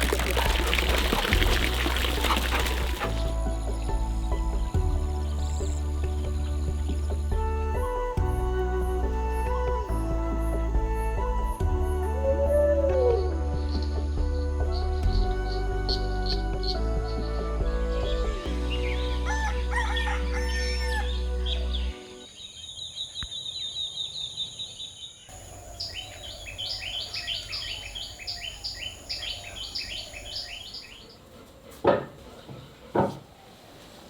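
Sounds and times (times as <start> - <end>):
birds chirping: 0.0 - 7.2, 21.0 - 33.6
background music sustained notes: 0.0 - 22.3.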